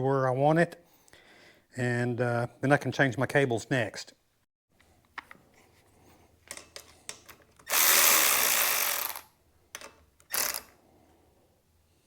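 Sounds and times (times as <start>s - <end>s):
handheld power tool running: 7.7s - 9.3s, 10.3s - 10.7s.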